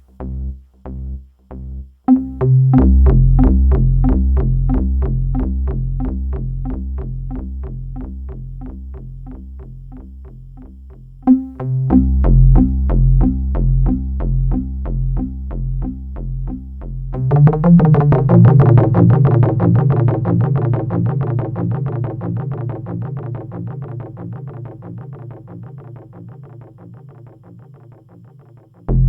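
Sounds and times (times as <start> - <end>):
synth bass sequence: 0.2 - 23.6
synthesizer repeated notes: 2.1 - 23.8.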